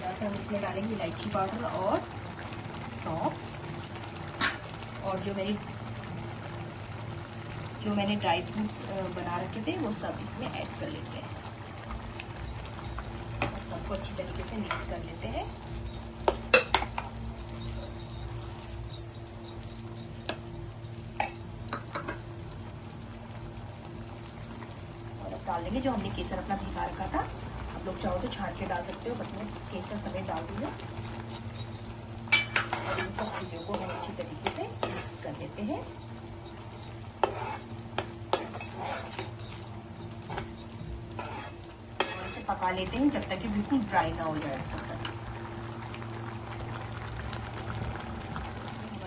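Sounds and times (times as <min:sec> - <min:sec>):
low steady hum: 0:00.0 - 0:49.0
metal spoon clinking on a pan: 0:11.7 - 0:22.2, 0:30.6 - 0:42.5
spoon knocking against pan: 0:16.2 - 0:18.4
spoon scraping thick mixture: 0:32.7 - 0:34.2, 0:37.2 - 0:39.4, 0:41.2 - 0:42.5.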